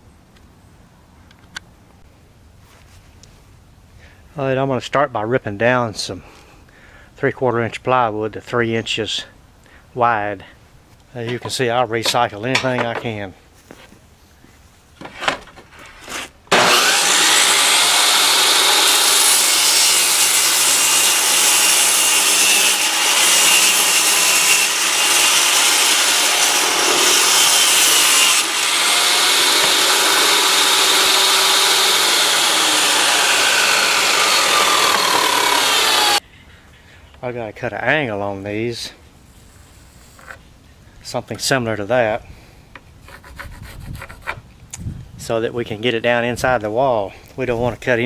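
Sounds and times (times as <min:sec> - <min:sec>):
power saw cutting plywood: 0:16.0 - 0:36.2.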